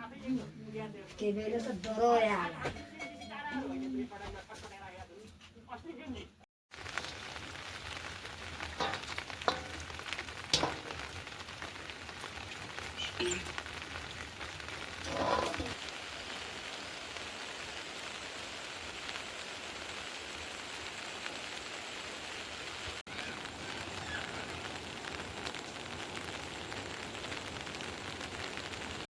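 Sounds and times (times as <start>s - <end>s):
heavy rain falling: 6.7s - 29.0s.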